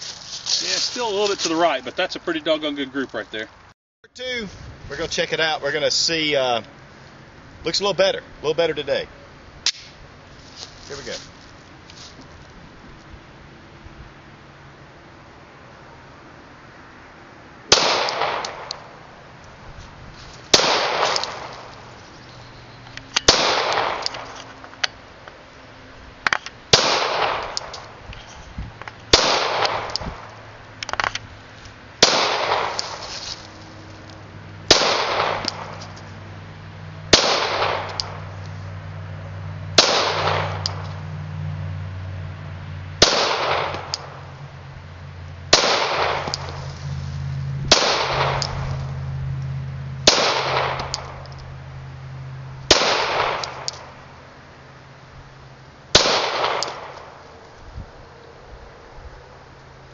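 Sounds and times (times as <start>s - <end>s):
pistol shots with echo: 17.7s - 18.8s, 20.5s - 21.5s, 23.2s - 24.3s, 26.7s - 27.7s, 29.1s - 29.9s, 32.0s - 32.8s, 34.7s - 35.8s, 37.1s - 38.1s, 39.8s - 40.8s, 43.0s - 44.0s, 45.5s - 46.5s, 47.7s - 48.5s, 50.0s - 51.1s, 52.7s - 53.7s, 56.0s - 57.0s.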